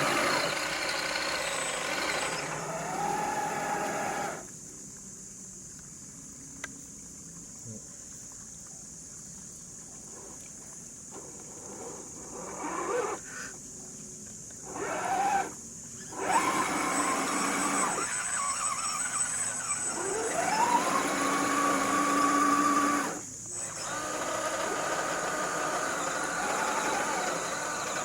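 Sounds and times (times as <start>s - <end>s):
electric motor whining: 0.0s - 4.5s, 11.2s - 13.2s, 14.6s - 28.0s.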